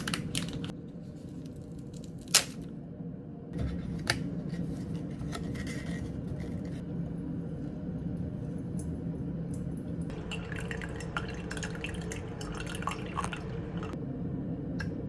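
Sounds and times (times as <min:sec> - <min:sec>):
steady low hum: 0:00.0 - 0:15.0
liquid trickling and dripping: 0:07.9 - 0:14.0.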